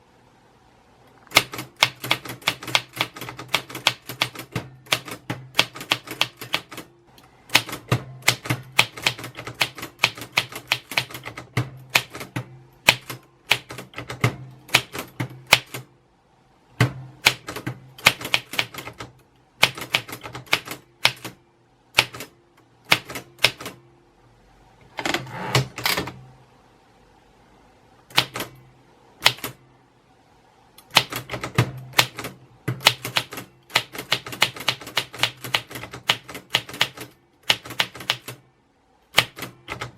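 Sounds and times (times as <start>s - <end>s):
typewriter typing: 1.3s - 6.9s, 7.5s - 15.9s, 16.8s - 21.4s, 22.0s - 23.8s, 25.0s - 26.2s, 28.1s - 28.6s, 29.2s - 29.6s, 30.8s - 38.4s, 39.1s - 39.9s.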